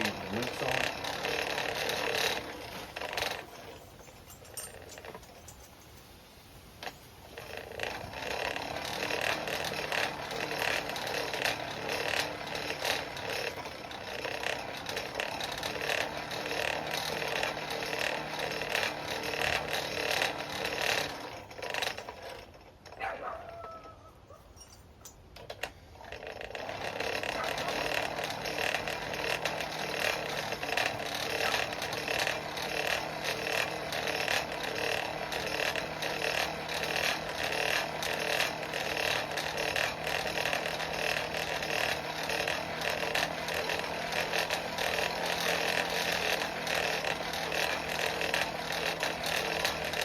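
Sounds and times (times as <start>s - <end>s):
forge blower whirring: 0.0s - 3.8s, 26.0s - 50.0s
gear clatter: 0.0s - 50.0s.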